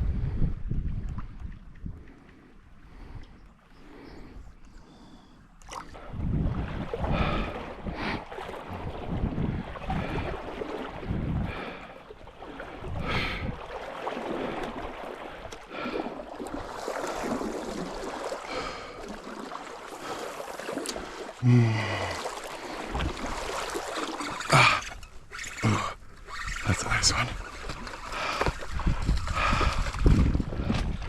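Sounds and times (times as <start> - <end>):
stream flowing: 9.9 - 31.0
breathy vocal sounds: 21.2 - 23.0, 24.3 - 25.0, 25.6 - 26.1
low falling grunt: 21.4 - 22.2.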